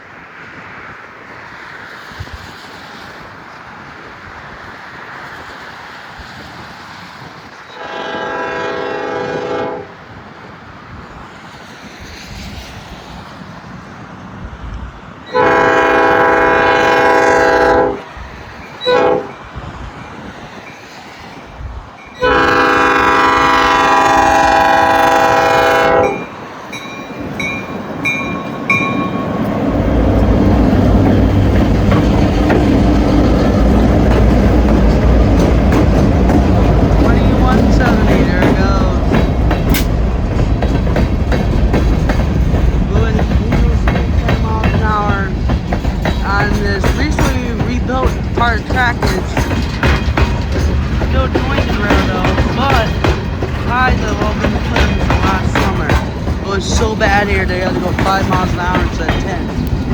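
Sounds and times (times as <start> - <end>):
locomotive air horn blasts: 7.7 - 10.0, 15.3 - 18.1, 18.8 - 19.4, 22.2 - 26.4
wheels clacking over rail joints: 15.1 - 59.9
locomotive engines running: 15.3 - 59.9.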